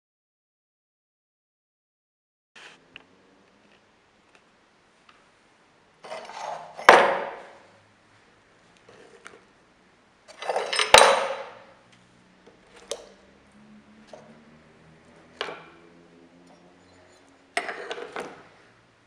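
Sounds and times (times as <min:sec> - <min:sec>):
metal tools clattering: 0:10.3 - 0:11.7.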